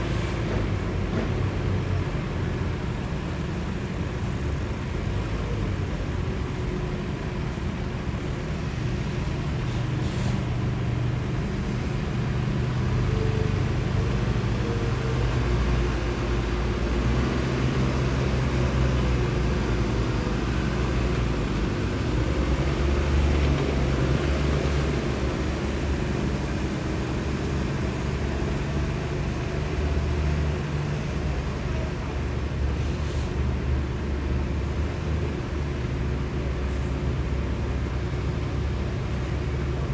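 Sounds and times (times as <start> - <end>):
distant vehicles rumbling: 0.0 - 39.9.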